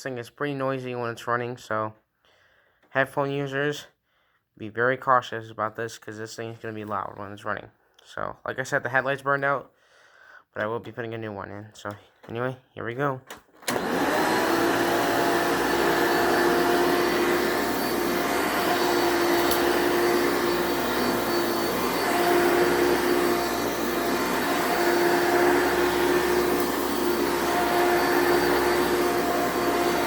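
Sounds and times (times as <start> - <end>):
upright vacuum cleaner running: 13.6 - 30.0.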